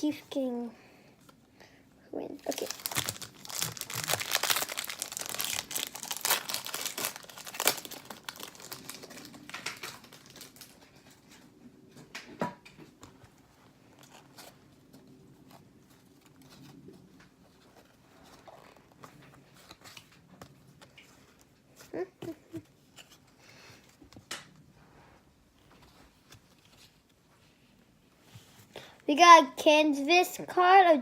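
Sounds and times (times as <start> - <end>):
foil wrapper crinkling and tearing: 2.4 - 11.2.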